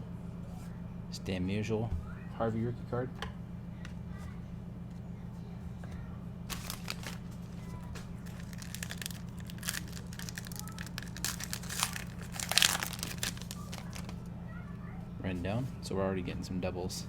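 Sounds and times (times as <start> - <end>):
foil wrapper crinkling: 6.5 - 14.2.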